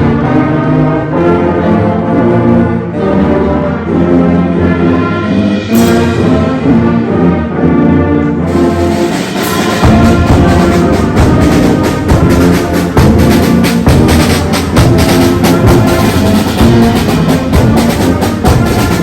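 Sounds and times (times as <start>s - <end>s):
concert band brass chords: 0.0s - 19.0s
cymbal crash: 5.7s - 6.6s.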